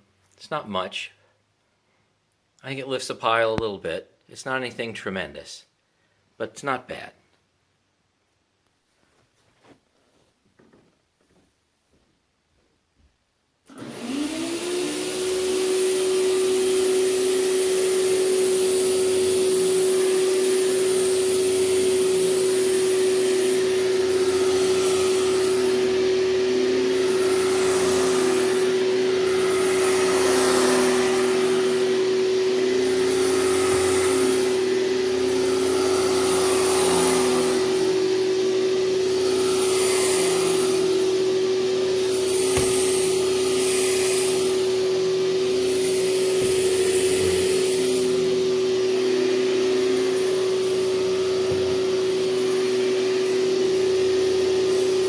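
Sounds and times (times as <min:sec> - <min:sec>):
vacuum cleaner motor whine: 0:13.7 - 0:55.0.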